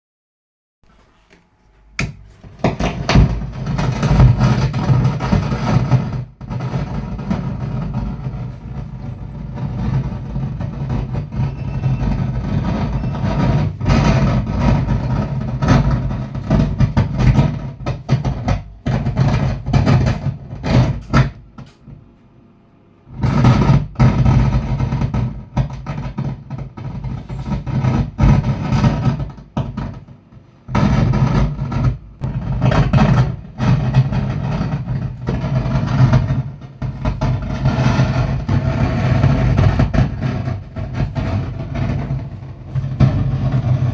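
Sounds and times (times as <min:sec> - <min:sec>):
speaker playing distorted audio: 0:00.9 - 0:21.8, 0:30.7 - 0:43.9
steady low hum: 0:32.1 - 0:43.9.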